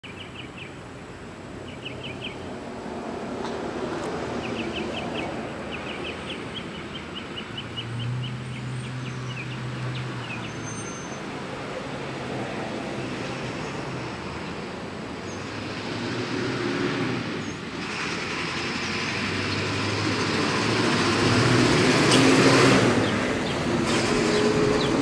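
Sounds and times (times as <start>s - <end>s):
small birds chirping: 0.0s - 2.5s
traffic noise: 0.0s - 25.0s
low engine hum: 18.1s - 25.0s.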